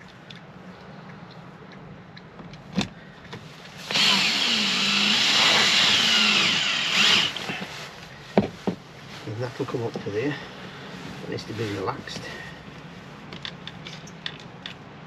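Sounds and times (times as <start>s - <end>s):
small electric motor whirring: 3.9s - 7.5s.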